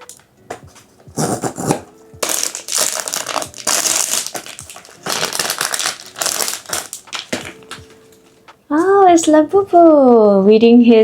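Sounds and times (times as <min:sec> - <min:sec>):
packaging wrapper tearing and crinkling: 0:01.2 - 0:07.9.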